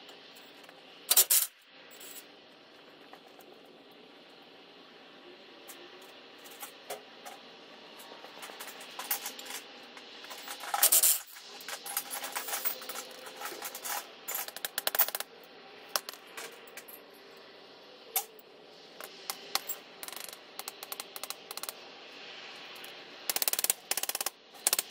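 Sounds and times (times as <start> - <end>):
hand tools clicking on metal: 23.3 - 24.9.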